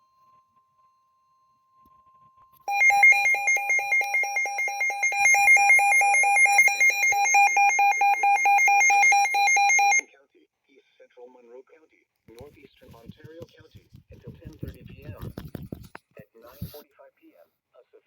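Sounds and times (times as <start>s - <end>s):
faint steady tone: 0.0s - 10.1s
two-pitch electronic alarm: 2.7s - 10.0s.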